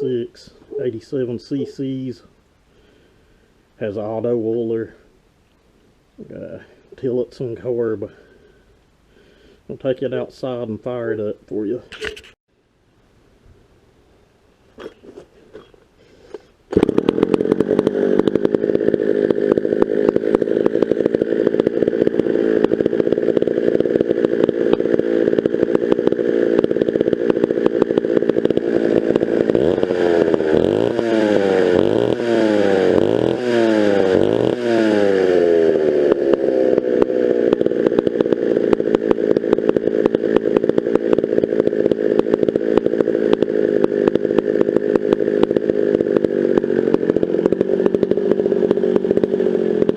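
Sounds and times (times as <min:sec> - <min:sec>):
chainsaw engine revving: 0:15.6 - 0:49.9.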